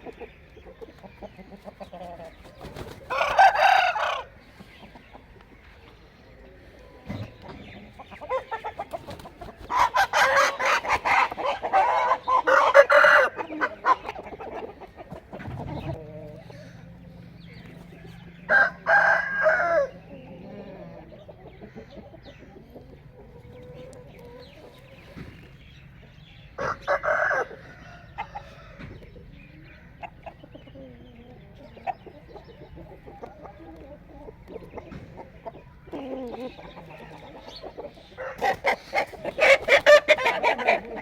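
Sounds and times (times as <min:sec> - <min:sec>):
roosters crowing: 0:01.9 - 0:04.5, 0:08.2 - 0:14.0, 0:15.8 - 0:21.0, 0:26.5 - 0:29.0, 0:36.1 - 0:41.0.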